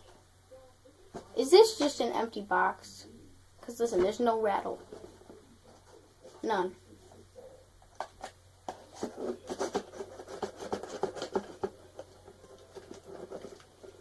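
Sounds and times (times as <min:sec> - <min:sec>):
cardboard box scratching and tapping: 0:08.0 - 0:14.0.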